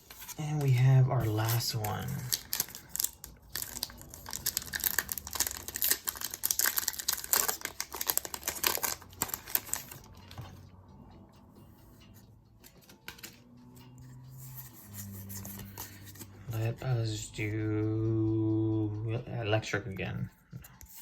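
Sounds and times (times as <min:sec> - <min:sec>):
quiet handling of wrapper: 0:00.1 - 0:10.1
foil wrapper crinkling and tearing: 0:01.3 - 0:10.1.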